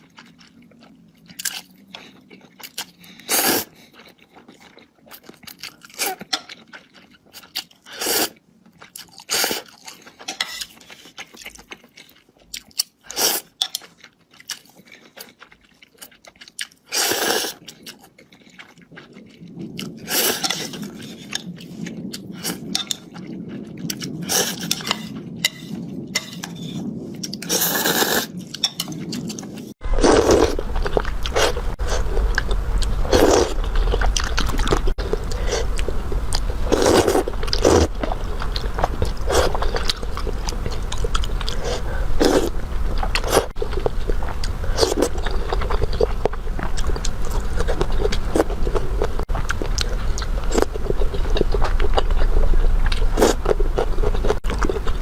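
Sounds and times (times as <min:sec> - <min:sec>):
chewing and crunching food: 0:00.0 - 0:55.0
low rumble: 0:29.8 - 0:55.0.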